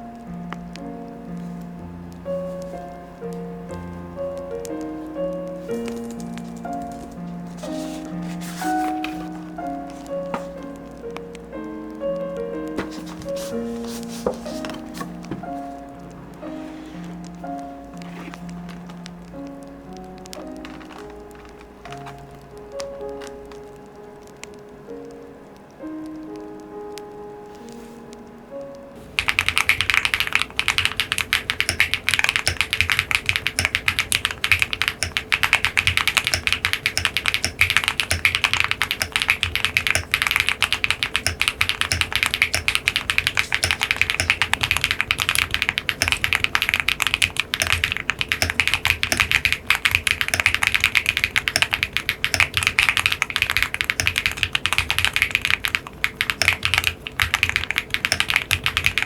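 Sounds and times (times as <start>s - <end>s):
fast mechanical keyboard typing: 18.0s - 22.2s, 29.1s - 59.0s.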